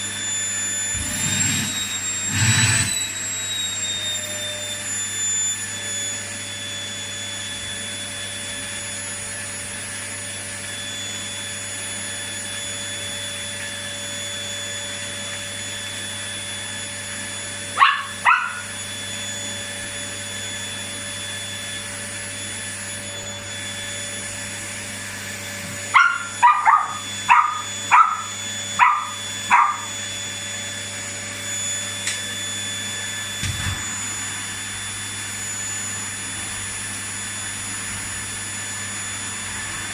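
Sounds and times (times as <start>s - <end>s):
vacuum cleaner whining: 0.0s - 39.9s
small dog barking: 17.8s - 18.7s, 25.9s - 30.0s.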